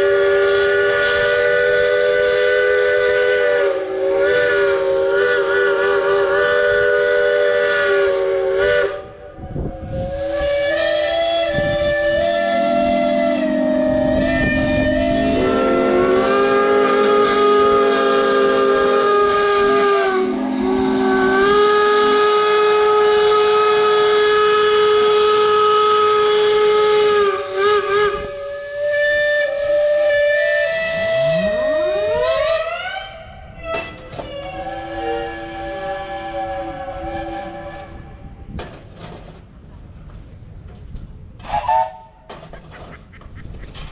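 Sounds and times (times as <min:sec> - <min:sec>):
steam whistles blowing: 0:00.0 - 0:38.5, 0:41.4 - 0:42.3
whistle sweeping upward in pitch: 0:09.5 - 0:23.1.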